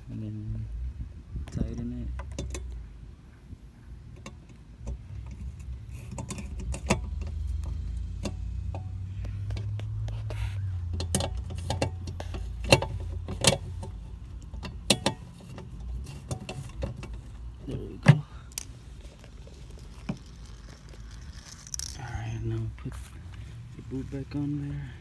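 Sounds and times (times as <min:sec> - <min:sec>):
clicks of fitting a bulb clip: 0:18.0 - 0:18.7.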